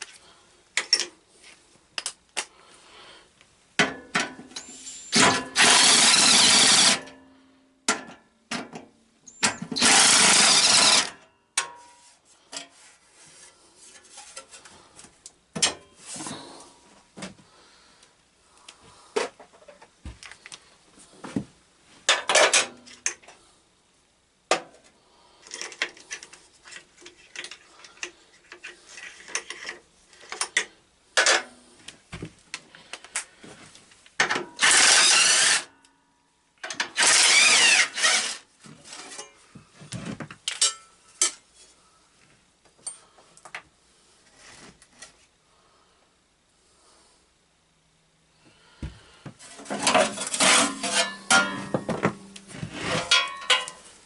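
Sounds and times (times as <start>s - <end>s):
power tool running: 5.1s - 7.0s, 9.8s - 11.1s, 34.6s - 35.7s, 37.0s - 38.4s
metal tools clinking and clanking: 40.5s - 41.4s, 49.5s - 53.9s.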